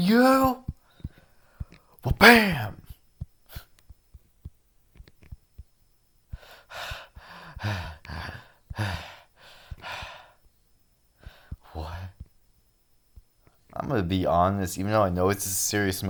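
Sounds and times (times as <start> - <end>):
faint clicks: 0.6 - 2.1, 3.1 - 6.5
man breathing heavily: 6.3 - 10.5, 11.2 - 12.1.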